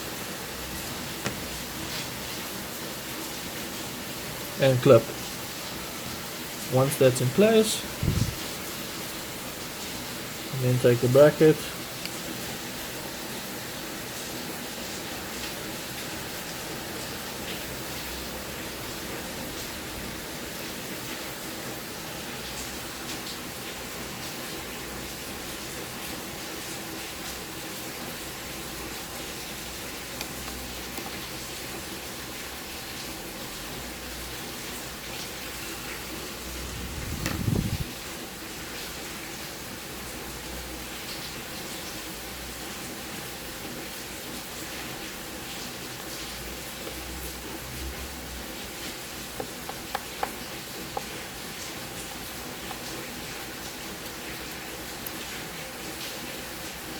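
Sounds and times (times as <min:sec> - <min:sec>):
steady background hiss: 0:00.8 - 0:22.2
background hiss: 0:04.4 - 0:12.8.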